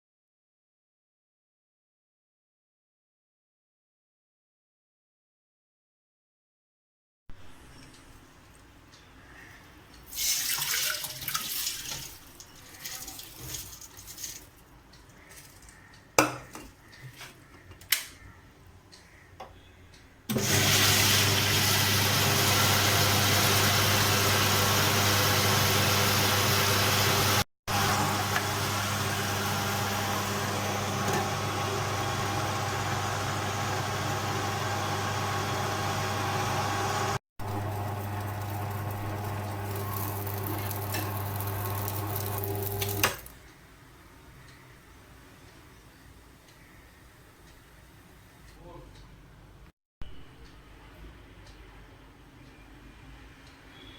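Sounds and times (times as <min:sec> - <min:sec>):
wet grinder motor humming and churning: 0:20.3 - 0:43.2.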